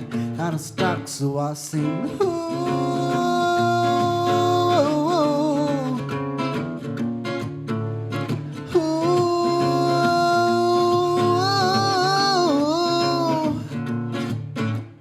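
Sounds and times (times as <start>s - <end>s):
strummed acoustic guitar: 0.0s - 15.0s
man singing a long note: 1.4s - 6.0s, 8.7s - 13.6s.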